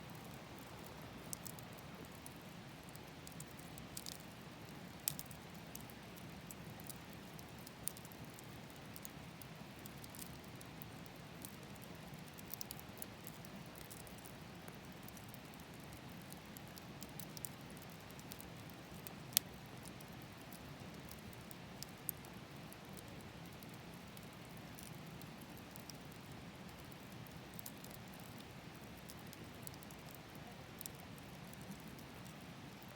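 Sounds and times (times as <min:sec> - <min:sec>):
bonfire crackling and popping: 0:00.1 - 0:32.9.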